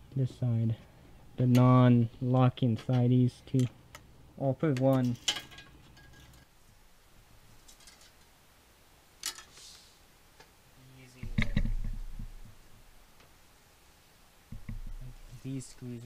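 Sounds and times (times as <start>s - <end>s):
knocks and rattling: 11.2s - 12.6s.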